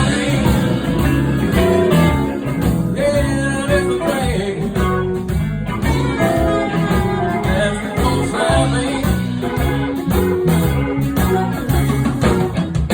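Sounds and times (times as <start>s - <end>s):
blues band playing live: 0.0s - 12.9s
guitar lines: 0.0s - 12.9s.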